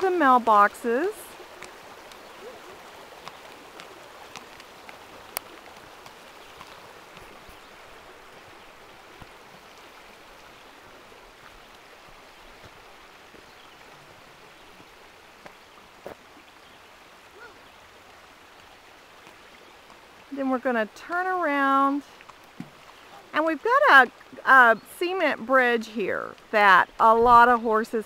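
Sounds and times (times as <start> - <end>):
creek water rushing: 0.0 - 28.0
faint sharp clicks: 3.2 - 7.3.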